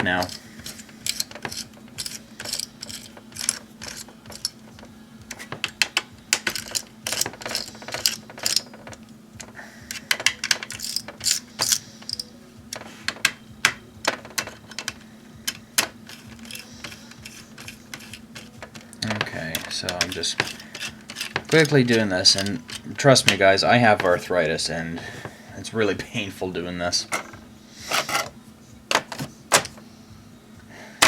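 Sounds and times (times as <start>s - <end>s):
laptop parts clicking and tapping: 0.0s - 22.9s
steady low hum: 0.0s - 31.0s.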